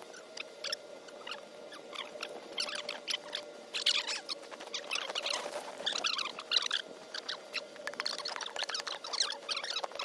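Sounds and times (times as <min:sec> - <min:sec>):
footsteps crunching in snow: 0:04.5 - 0:06.3.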